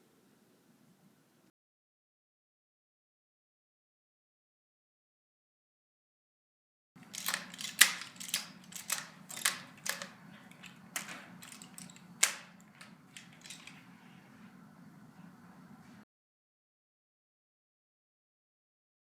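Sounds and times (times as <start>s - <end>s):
sharp clicks and knocks: 7.0s - 14.0s
low steady hum: 7.0s - 16.0s.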